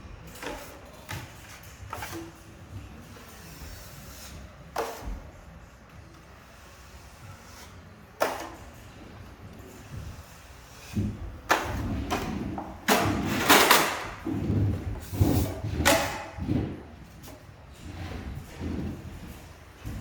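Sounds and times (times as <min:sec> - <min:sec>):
drywall knife scraping: 0:09.8 - 0:20.0.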